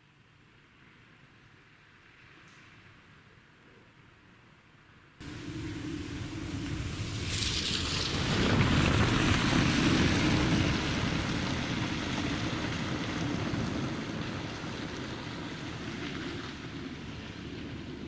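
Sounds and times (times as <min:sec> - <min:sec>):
wind buffeting microphone: 0:05.2 - 0:18.0
wind gusting: 0:05.2 - 0:18.0.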